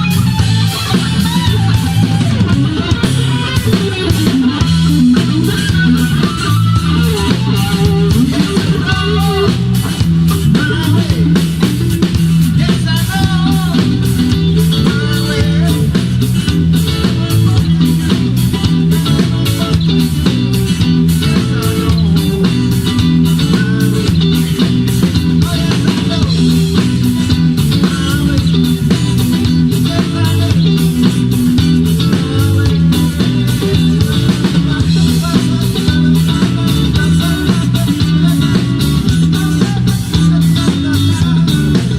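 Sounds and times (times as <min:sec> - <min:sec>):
bass guitar: 0:00.0 - 0:41.9
electric guitar: 0:00.0 - 0:41.9
steady drum beat: 0:00.0 - 0:41.9.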